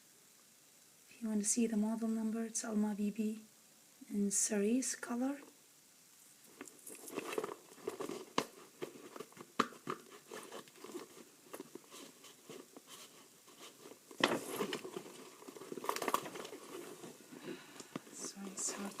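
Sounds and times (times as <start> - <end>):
paper rustling and crinkling: 6.5 - 19.0.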